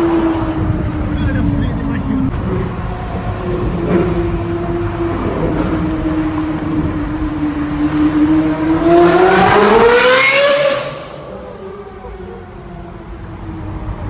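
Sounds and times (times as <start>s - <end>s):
sports car engine revving: 3.4s - 11.9s.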